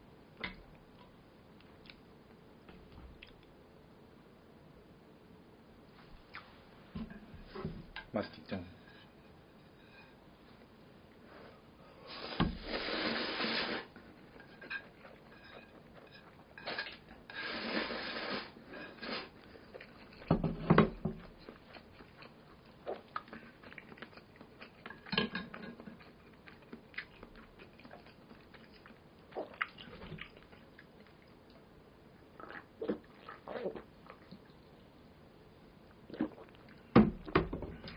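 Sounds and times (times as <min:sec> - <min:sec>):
soft chewing clicks: 0:00.9 - 0:02.4, 0:03.2 - 0:03.6, 0:21.2 - 0:25.1, 0:25.8 - 0:31.7
noodle slurping: 0:12.1 - 0:14.0, 0:16.7 - 0:19.5.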